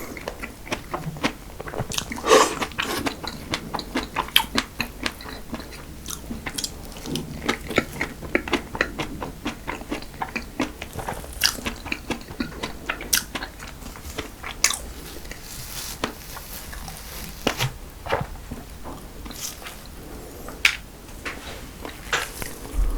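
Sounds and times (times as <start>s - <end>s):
biting and chewing pastry: 0.0s - 20.8s
sharp crunches: 10.8s - 11.7s.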